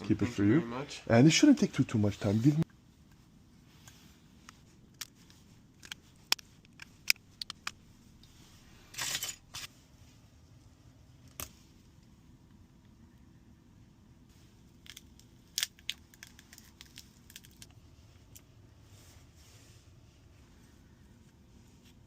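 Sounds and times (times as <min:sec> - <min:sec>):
rustling scrape: 0:18.8 - 0:20.8.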